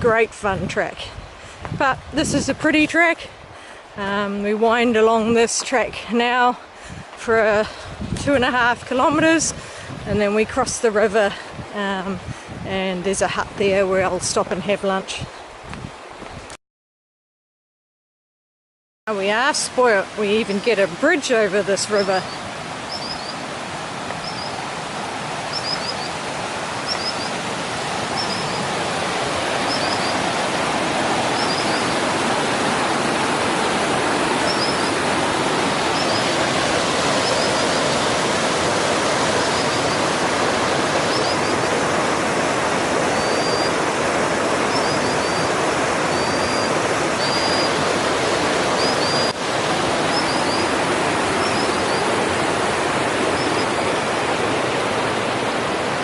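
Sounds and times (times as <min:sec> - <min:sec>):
river water rushing: 0:19.1 - 0:56.0
small bird chirping: 0:22.0 - 0:23.4, 0:24.2 - 0:24.6, 0:25.5 - 0:26.2, 0:26.8 - 0:27.4, 0:28.2 - 0:28.7, 0:29.7 - 0:30.2, 0:31.4 - 0:31.9, 0:34.4 - 0:35.0, 0:37.2 - 0:37.7, 0:41.1 - 0:41.7, 0:43.2 - 0:43.8, 0:44.7 - 0:45.5, 0:46.1 - 0:47.8, 0:51.4 - 0:52.0.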